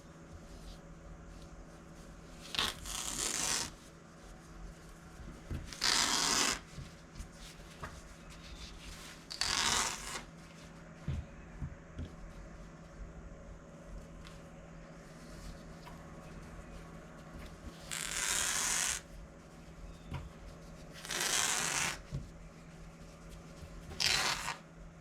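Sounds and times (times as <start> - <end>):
cloth ripping from paper: 2.4 - 3.8, 5.7 - 6.7, 9.1 - 10.4, 17.8 - 19.1, 20.9 - 22.0, 23.9 - 24.6.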